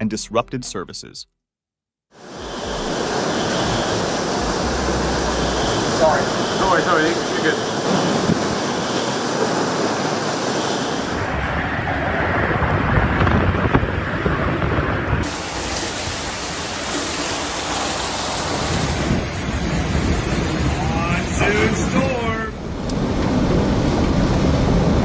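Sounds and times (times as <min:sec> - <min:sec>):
heavy rain: 0:02.2 - 0:25.0
wind rushing: 0:02.2 - 0:25.0
deep rumbling: 0:02.4 - 0:08.8, 0:11.1 - 0:16.4.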